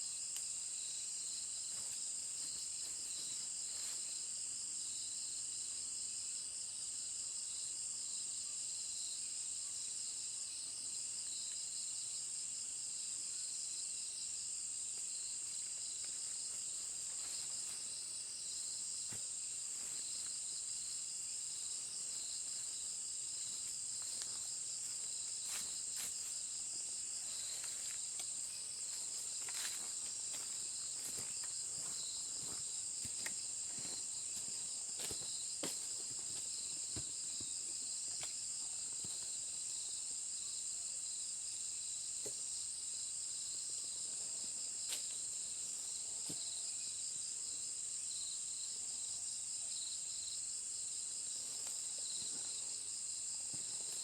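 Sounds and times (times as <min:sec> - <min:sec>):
insects chirring: 0:00.0 - 0:06.1, 0:12.8 - 0:44.0.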